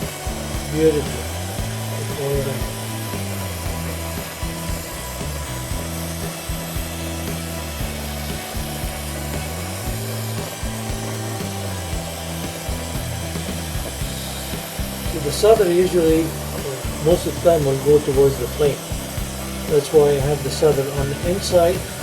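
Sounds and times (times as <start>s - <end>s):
background music with low notes: 0.0s - 22.0s
soldering torch flame hissing: 0.0s - 22.0s.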